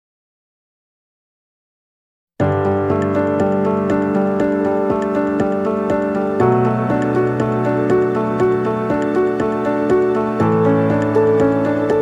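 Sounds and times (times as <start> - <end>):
gentle piano notes: 2.4 - 12.0.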